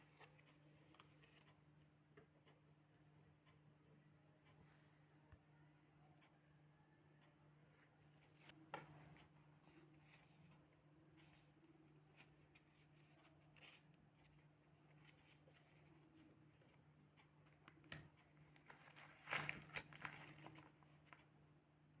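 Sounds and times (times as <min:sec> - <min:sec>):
rustling and clicking of handling: 0:08.0 - 0:21.4.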